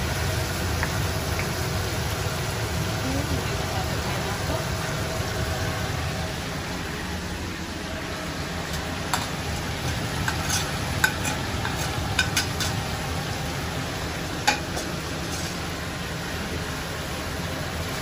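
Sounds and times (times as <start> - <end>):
food sizzling in oil: 8.0 - 18.0
utensil clinking against pan: 9.1 - 12.8.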